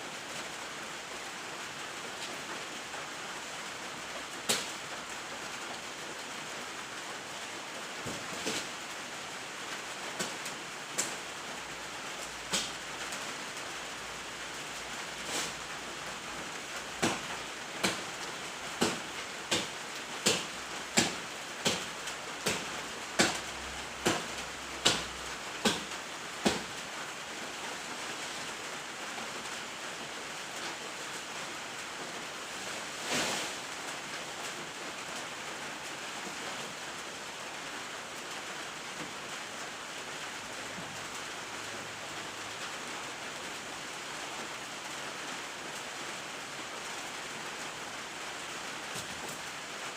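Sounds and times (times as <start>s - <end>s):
rain-like hiss: 0.0s - 49.9s
axe chopping wood: 17.0s - 17.2s, 17.8s - 18.0s, 18.8s - 23.4s, 24.0s - 26.7s.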